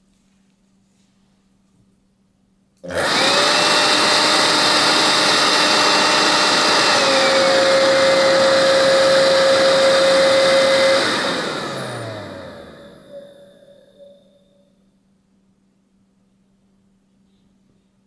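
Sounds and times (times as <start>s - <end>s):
handheld vacuum cleaner whining: 2.8s - 14.1s.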